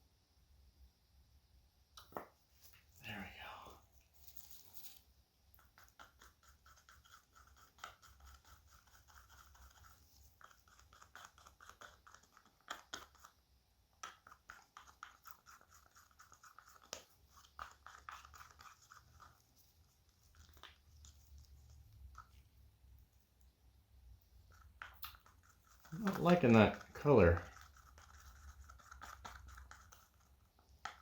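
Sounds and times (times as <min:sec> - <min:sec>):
resin stirring scraping: 0:24.3 - 0:31.0.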